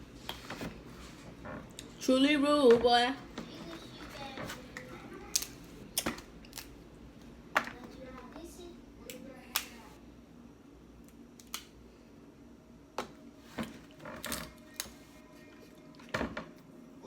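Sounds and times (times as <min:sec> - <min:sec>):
crab shells cracking: 0:11.0 - 0:11.8.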